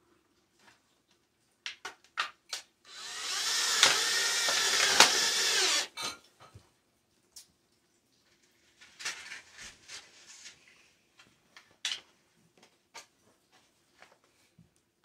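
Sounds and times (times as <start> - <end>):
cordless drill driving screw: 2.9 - 6.0.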